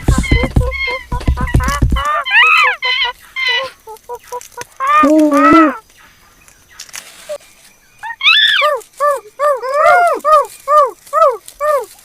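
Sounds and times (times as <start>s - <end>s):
chimpanzee hooting: 0.1s - 5.8s.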